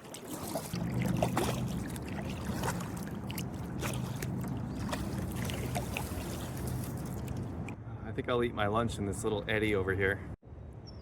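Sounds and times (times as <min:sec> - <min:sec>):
paddle dipping into water: 0:00.0 - 0:07.8
water drips and splashes: 0:00.0 - 0:07.8.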